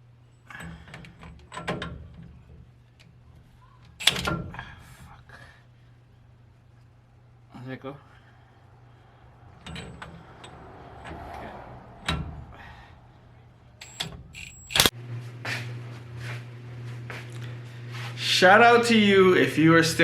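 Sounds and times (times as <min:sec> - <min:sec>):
clicks and knocks of tools: 0:13.8 - 0:14.9.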